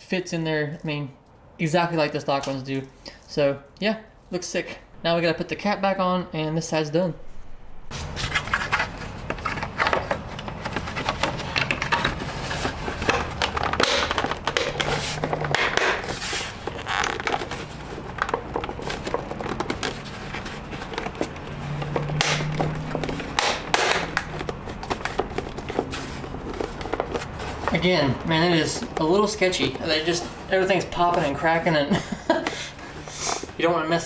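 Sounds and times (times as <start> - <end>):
plastic clips popping and scraping: 7.9 - 33.6.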